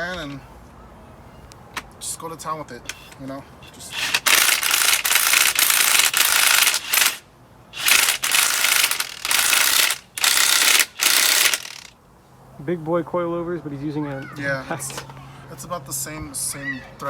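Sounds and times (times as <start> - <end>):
impact wrench hammering: 3.8 - 7.2, 7.8 - 11.9.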